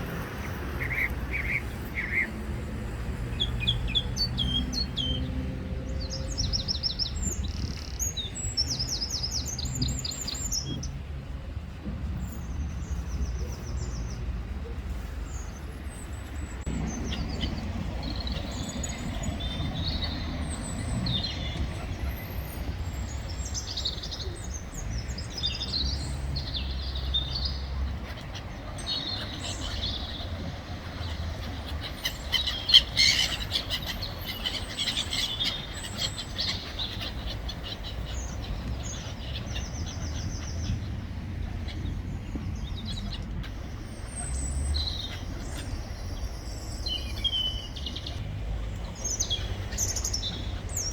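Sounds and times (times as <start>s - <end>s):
small birds chirping: 12.1s - 50.9s.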